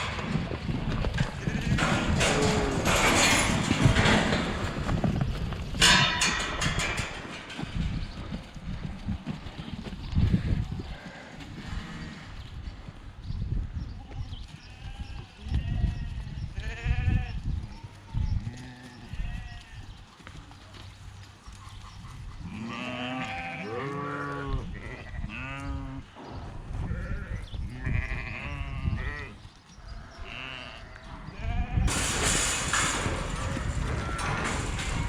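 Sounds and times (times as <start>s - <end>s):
low knocks and thumps: 0.0s - 10.6s, 31.7s - 35.0s
sheep bleating: 22.5s - 26.0s, 30.0s - 32.0s.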